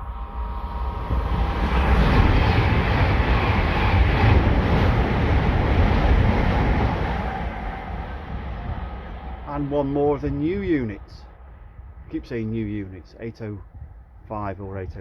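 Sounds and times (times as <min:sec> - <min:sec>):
electric train passing at speed: 0:00.0 - 0:13.0.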